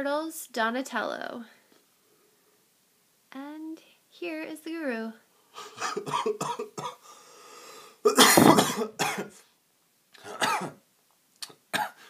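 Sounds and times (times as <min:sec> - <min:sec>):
person coughing: 0:05.6 - 0:07.0, 0:08.0 - 0:09.4, 0:10.2 - 0:10.8, 0:11.8 - 0:12.0.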